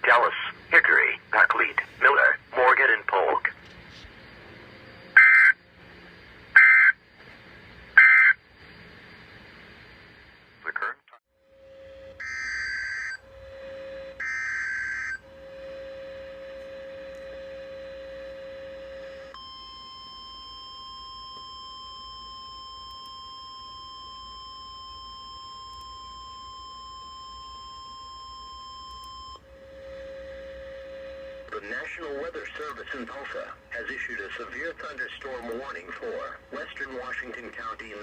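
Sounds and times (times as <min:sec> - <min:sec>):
steady alarm tone: 0:00.0 - 0:10.6, 0:11.3 - 0:38.0
digital data bursts: 0:05.1 - 0:05.6, 0:08.0 - 0:08.4
lower steady tone: 0:11.4 - 0:38.0.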